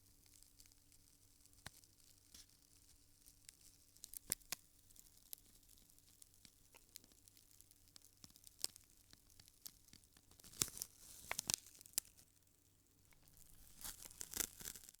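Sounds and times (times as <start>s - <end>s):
cigarette ember crackling: 13.1s - 15.0s.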